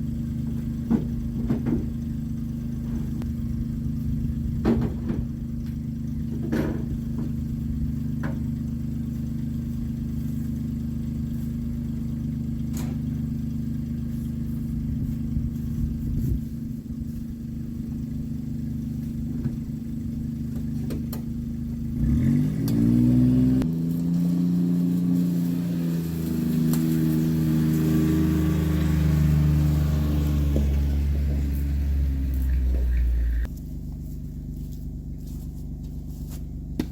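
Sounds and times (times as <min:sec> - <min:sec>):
vehicle engine running and revving: 0:00.0 - 0:36.9.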